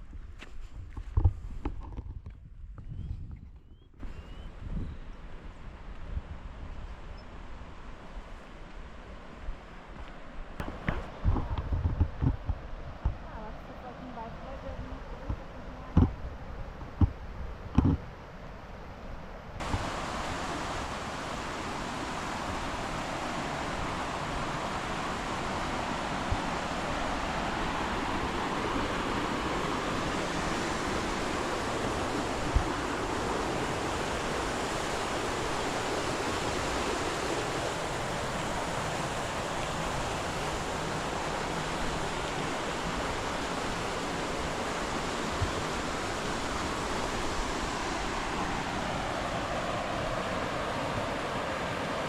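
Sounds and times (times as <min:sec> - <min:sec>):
waterfall rushing: 0:19.6 - 0:52.0.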